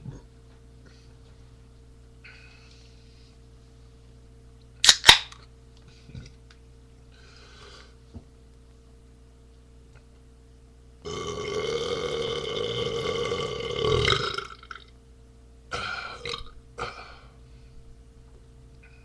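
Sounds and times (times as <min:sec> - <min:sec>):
person burping: 0:11.0 - 0:14.9, 0:15.7 - 0:17.3.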